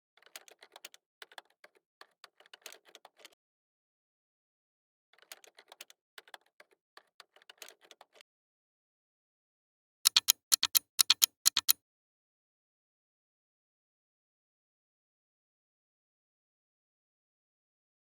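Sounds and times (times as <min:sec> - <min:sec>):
rapid clicking: 0:10.1 - 0:11.8.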